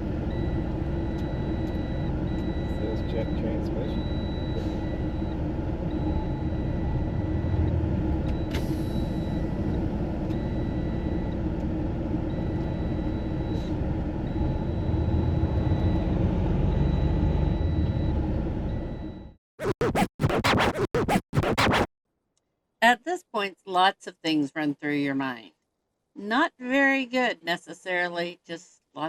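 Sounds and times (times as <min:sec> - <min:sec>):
low vehicle rumble: 0:00.0 - 0:19.4
dashboard warning beeps: 0:00.3 - 0:09.5, 0:12.3 - 0:13.7, 0:14.3 - 0:16.1.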